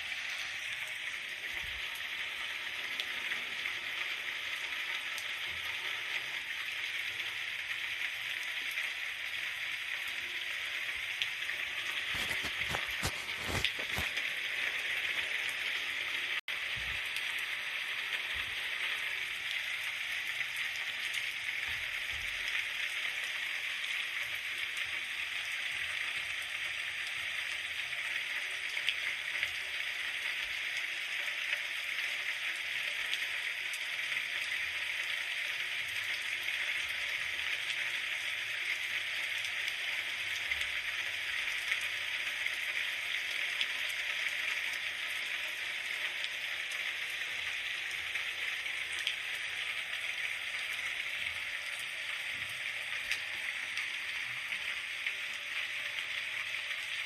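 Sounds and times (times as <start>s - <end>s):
steady rain falling: 10.0s - 26.4s.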